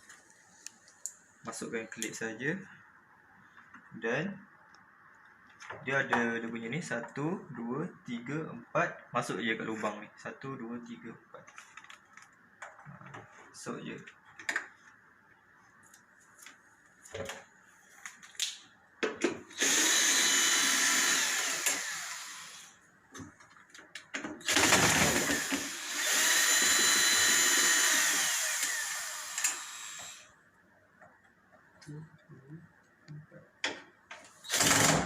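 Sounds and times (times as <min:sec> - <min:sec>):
power screwdriver whining: 0:19.6 - 0:22.7, 0:24.4 - 0:30.2.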